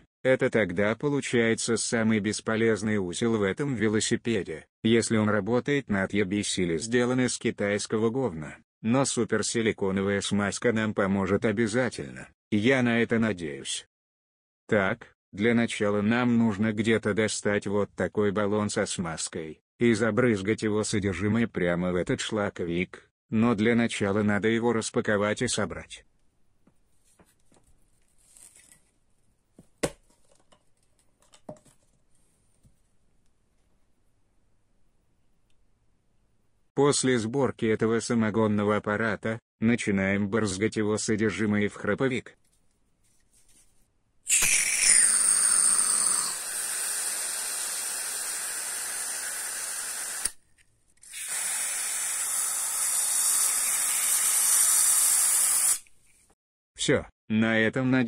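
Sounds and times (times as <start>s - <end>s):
packaging tearing and rustling: 28.0s - 29.0s
aerosol can spraying hiss: 46.1s - 50.4s, 51.1s - 55.9s.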